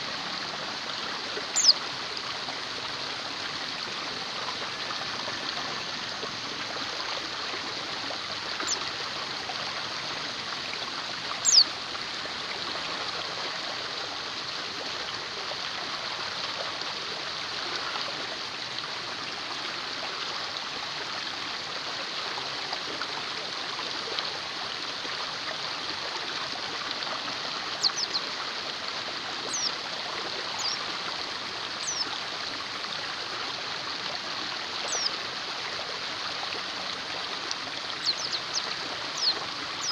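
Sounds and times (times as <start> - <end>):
stream flowing: 0.0 - 39.9
small bird chirps: 1.5 - 1.8, 11.4 - 11.7, 27.8 - 28.2, 29.5 - 29.7, 30.6 - 30.8, 31.8 - 32.1, 34.9 - 35.2, 38.0 - 39.9.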